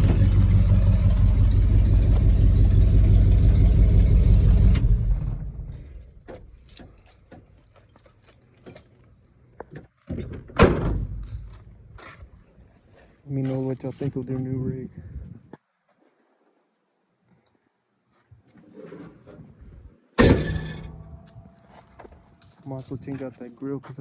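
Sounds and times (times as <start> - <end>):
truck engine running: 0.0 - 6.3
sharp bang: 20.2 - 21.8.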